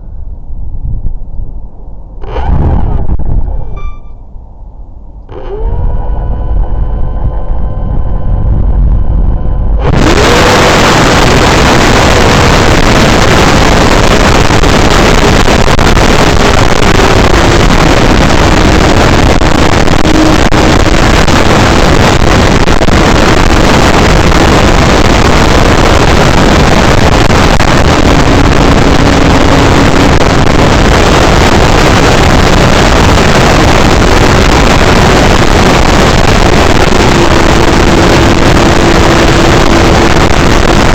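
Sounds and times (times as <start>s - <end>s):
wind buffeting microphone: 0.0s - 3.8s, 5.6s - 40.9s
model plane motor whining: 5.3s - 7.6s, 36.5s - 40.5s.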